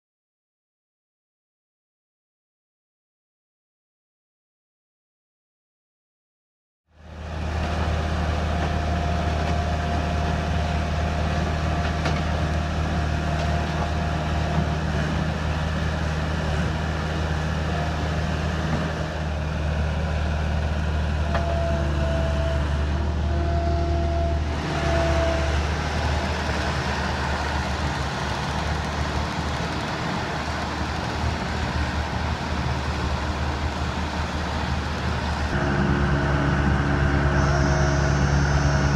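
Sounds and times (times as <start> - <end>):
engine droning: 7.0 - 38.9
thin high whine: 35.6 - 38.9.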